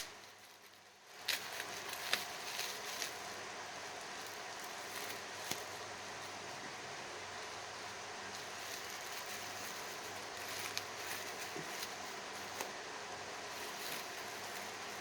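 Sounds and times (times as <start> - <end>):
bubble wrap crinkling: 0.0 - 6.6, 7.2 - 15.0
background hiss: 0.0 - 15.0.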